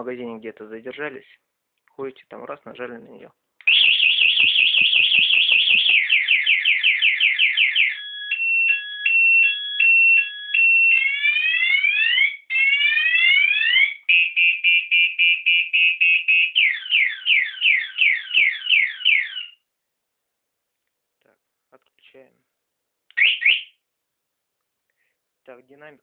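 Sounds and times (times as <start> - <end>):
scooter alarm siren: 3.7 - 19.6, 23.2 - 23.7.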